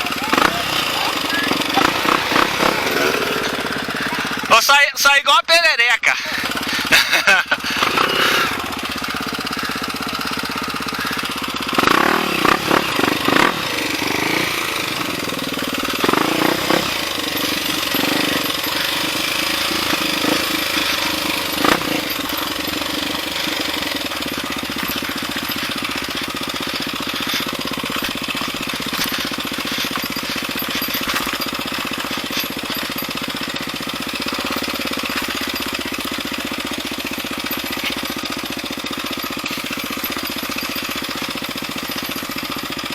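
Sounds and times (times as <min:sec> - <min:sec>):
dirt bike engine running: 0:00.0 - 0:05.2, 0:06.0 - 0:42.9.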